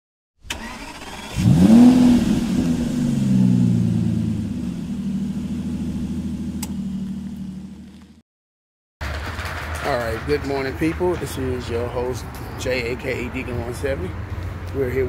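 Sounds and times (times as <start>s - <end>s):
car engine starting and idling: 0.4s - 8.2s.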